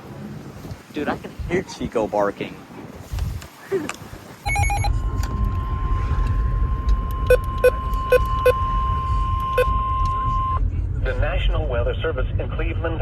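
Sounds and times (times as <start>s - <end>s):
short blips: 4.4s - 10.6s
steady warning alarm tone: 4.4s - 10.6s
low rumble: 4.4s - 13.0s.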